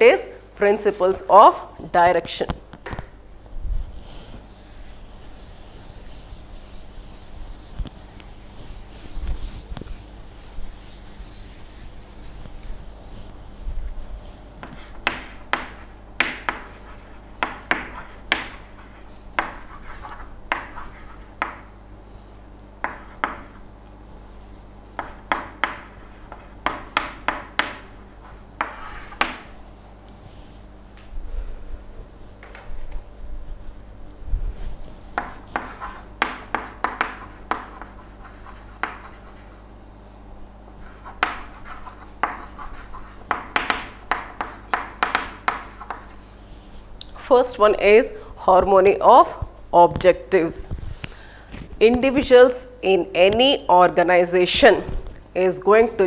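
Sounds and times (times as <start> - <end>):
low electrical hum: 0.0 - 56.0
pen scratching on paper: 4.6 - 13.4, 28.0 - 29.3, 35.2 - 39.6, 40.8 - 46.1.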